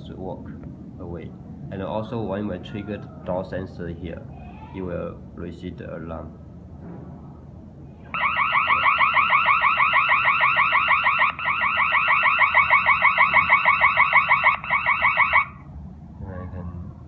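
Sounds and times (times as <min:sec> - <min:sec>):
pulsing electronic alarm tone: 0:08.1 - 0:15.6.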